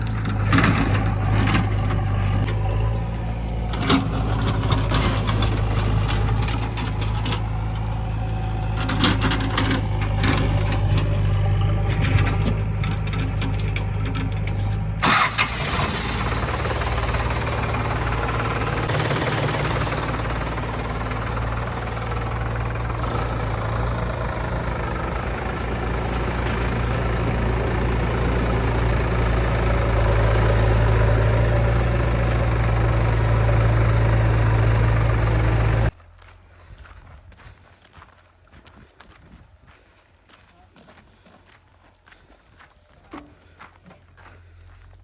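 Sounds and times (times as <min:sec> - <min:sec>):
heavy machine diesel engine: 0:00.0 - 0:36.0.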